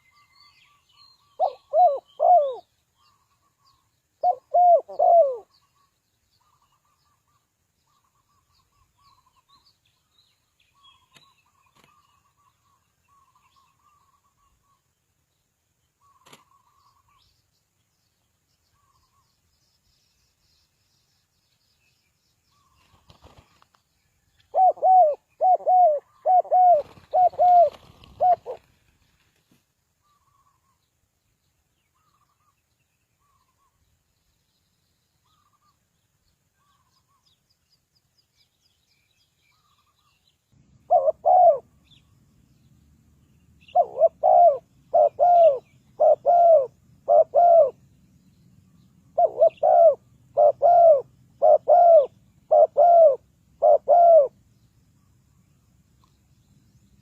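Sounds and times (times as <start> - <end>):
low background noise: 0.0 - 57.0
dove cooing: 1.3 - 2.7, 4.2 - 5.6, 24.5 - 28.7, 40.8 - 41.8, 43.6 - 47.8, 49.1 - 54.4.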